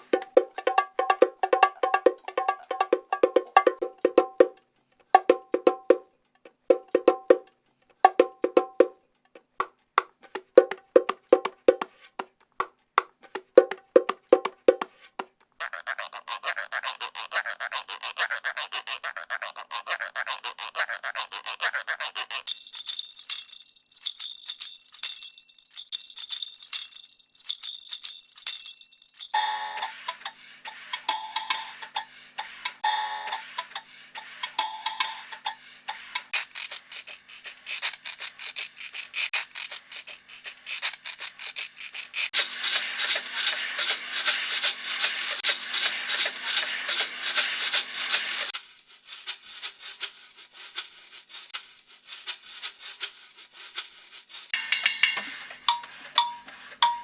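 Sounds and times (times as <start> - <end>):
shaken rattle: 0.0 - 3.8, 13.2 - 57.0
struck percussion pattern: 0.0 - 4.6, 6.7 - 8.9, 10.4 - 12.0, 13.4 - 14.9, 28.5 - 36.3, 54.6 - 57.0
metallic jingling: 22.5 - 36.1, 54.6 - 57.0
ringing percussion strokes: 22.5 - 36.3, 54.6 - 57.0.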